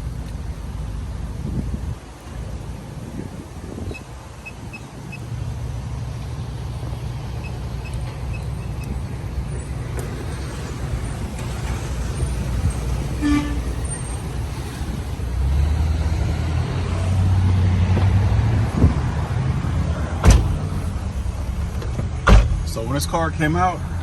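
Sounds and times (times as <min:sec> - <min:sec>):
vehicle road rumble: 0:00.0 - 0:24.0
sharp thump: 0:20.2 - 0:21.0, 0:21.9 - 0:22.8.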